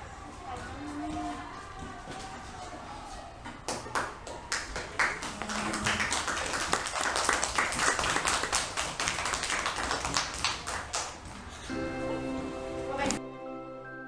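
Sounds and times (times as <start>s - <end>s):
group clapping unevenly: 3.5s - 11.6s.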